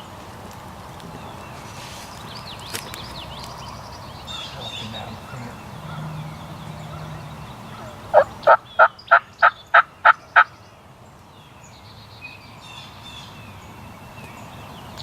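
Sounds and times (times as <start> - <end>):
small birds chirping faintly: 0.0 - 15.0
turkey gobbling: 5.2 - 10.5.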